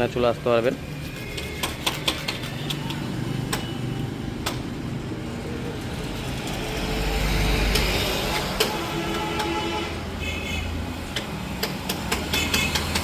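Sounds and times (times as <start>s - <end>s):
street traffic engines: 0.0s - 13.0s
vehicle passing close: 4.8s - 8.9s.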